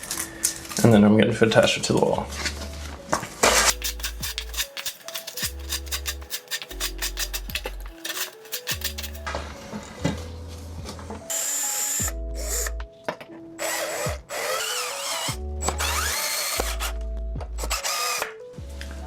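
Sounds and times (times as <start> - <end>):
background music: 0.0 - 19.0
cordless drill whining: 11.3 - 12.8, 13.6 - 17.0, 17.6 - 18.3.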